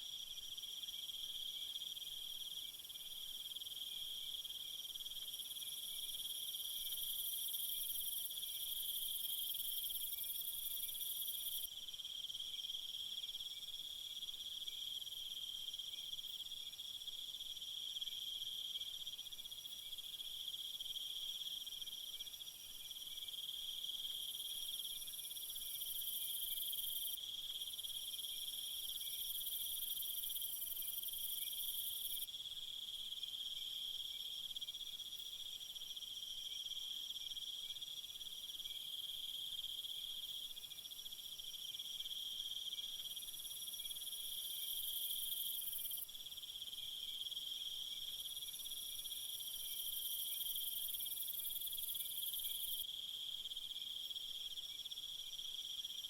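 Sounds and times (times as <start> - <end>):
crickets chirring: 20.4 - 35.3, 36.2 - 53.4.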